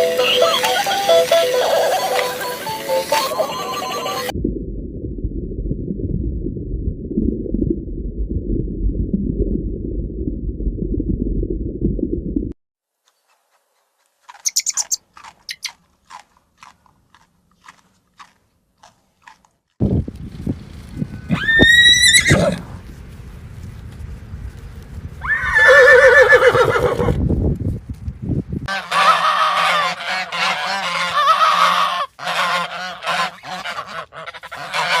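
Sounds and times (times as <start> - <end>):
flock of birds calling: 0.0 - 4.3
animal chewing crunchy food: 13.0 - 19.8.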